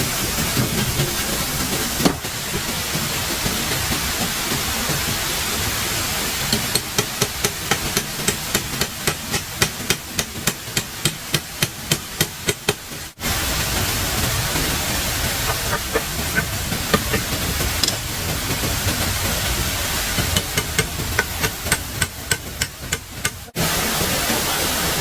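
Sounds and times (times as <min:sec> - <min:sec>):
steady rushing hiss: 0:00.0 - 0:25.0
rapid even knocks: 0:06.5 - 0:13.0, 0:15.4 - 0:18.8, 0:20.2 - 0:23.5.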